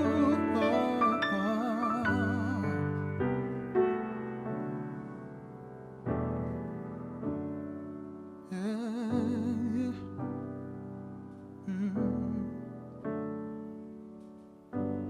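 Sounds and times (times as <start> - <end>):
man singing wordless note: 0.0 - 3.0, 8.5 - 10.1, 11.7 - 12.6
slow piano chords: 0.0 - 15.0.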